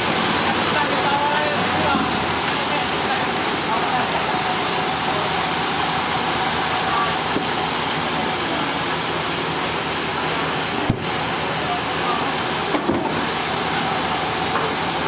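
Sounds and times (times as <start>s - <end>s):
sawmill machinery running: 0.0s - 15.0s.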